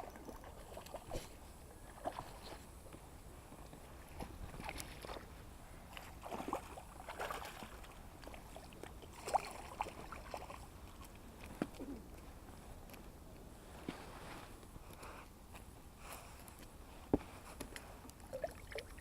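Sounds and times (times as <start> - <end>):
water splashing and sloshing: 0.0 - 2.6, 4.1 - 11.9, 18.2 - 19.0.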